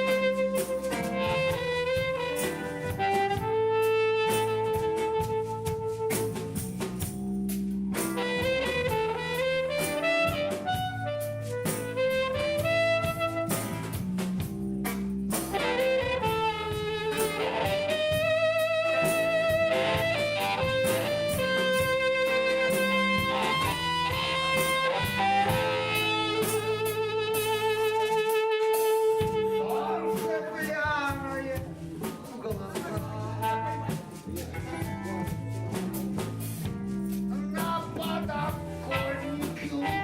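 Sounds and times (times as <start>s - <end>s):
live band playing: 0.0s - 40.0s
lead melody with vibrato: 15.5s - 31.8s.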